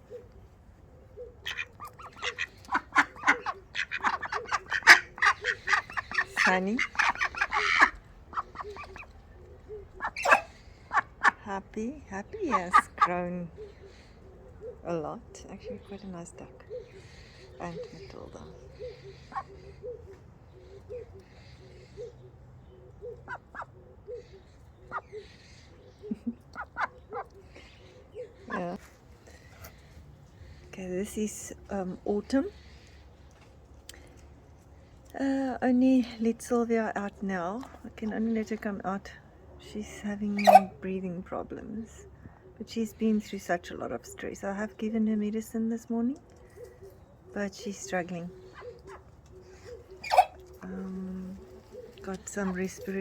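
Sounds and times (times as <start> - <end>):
soft low poultry call: 1.1 - 11.4, 40.4 - 40.8, 48.3 - 53.0
short sharp poultry calls: 1.4 - 9.1, 10.0 - 11.3, 40.4 - 40.7, 48.5 - 50.6
ducks quacking: 1.4 - 11.6, 12.3 - 13.4, 26.5 - 27.4, 40.4 - 40.8, 48.3 - 53.0.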